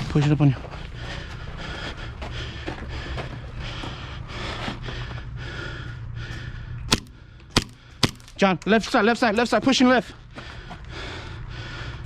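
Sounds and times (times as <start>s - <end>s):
steady low hum: 0.0s - 12.0s
person breathing close to microphone: 0.8s - 8.1s, 10.3s - 12.0s.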